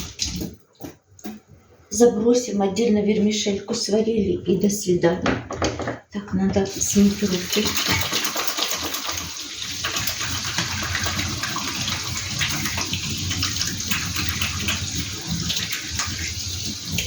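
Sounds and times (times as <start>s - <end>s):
tap water running: 0.0s - 1.5s, 6.6s - 17.0s.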